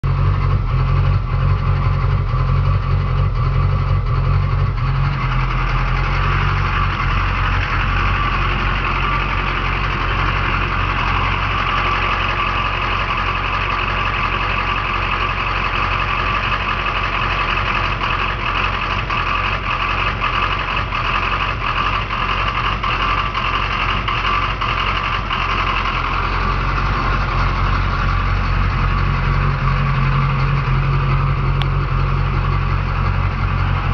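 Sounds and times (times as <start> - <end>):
diesel engine idling roughly: 0.0 - 33.9.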